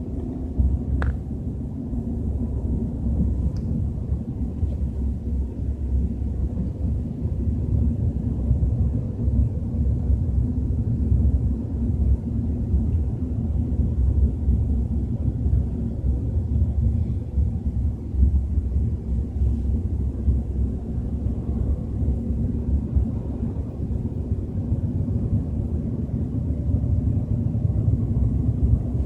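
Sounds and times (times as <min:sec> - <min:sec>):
low rumble inside car cabin: 0:00.0 - 0:29.0.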